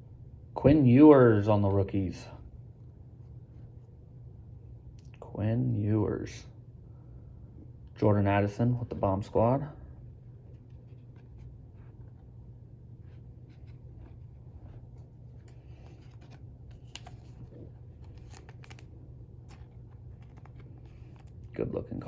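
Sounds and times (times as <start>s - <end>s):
steady low hum: 0.0s - 22.0s
trading cards flipped by hand: 13.0s - 21.5s.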